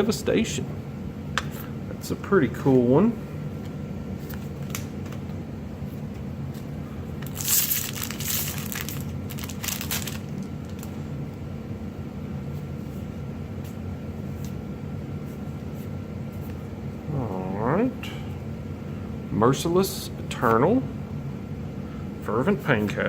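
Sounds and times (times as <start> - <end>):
steady low hum: 0.0 - 23.0
foil wrapper crinkling and tearing: 7.2 - 11.0.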